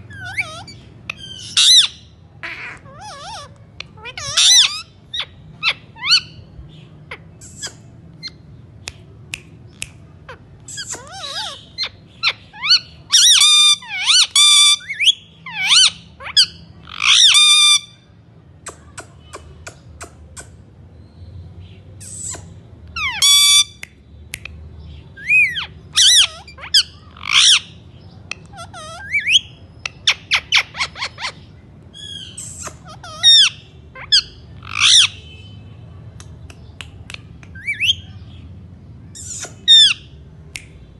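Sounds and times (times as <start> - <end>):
parrot squawking and chirping: 0.0 - 8.6, 10.2 - 18.1, 22.0 - 24.4, 25.1 - 35.4, 37.1 - 38.4, 39.1 - 40.2.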